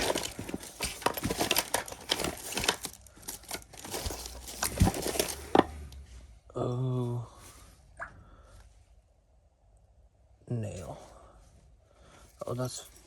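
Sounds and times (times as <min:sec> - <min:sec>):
clicks and knocks of small items: 0:00.0 - 0:06.0
rustling and crinkling: 0:00.0 - 0:06.5.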